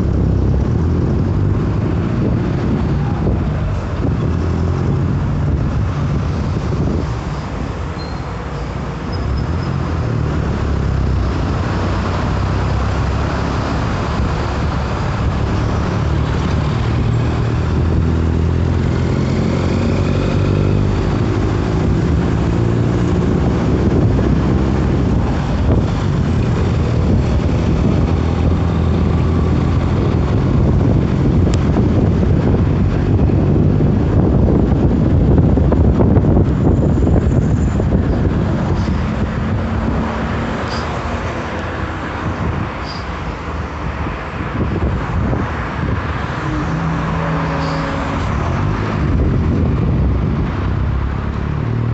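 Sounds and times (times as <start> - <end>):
diesel bus engine running: 0.0 - 51.9.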